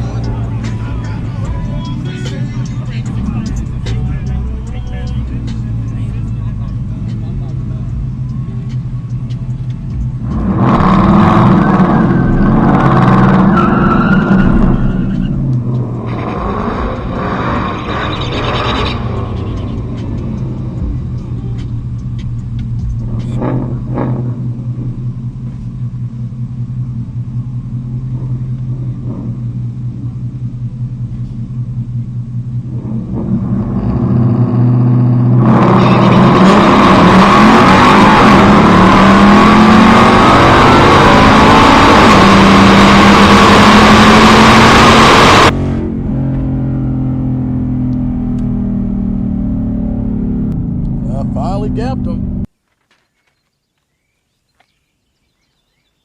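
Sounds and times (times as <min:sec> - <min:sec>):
car engine rumbling idle: 0:00.0 - 0:13.7, 0:14.4 - 0:36.4, 0:45.5 - 0:52.5
car full-throttle acceleration: 0:00.0 - 0:52.6.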